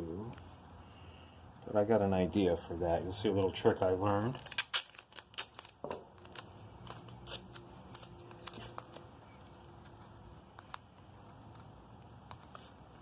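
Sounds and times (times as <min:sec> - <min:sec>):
masking tape clicking and crackling: 0:03.2 - 0:13.0.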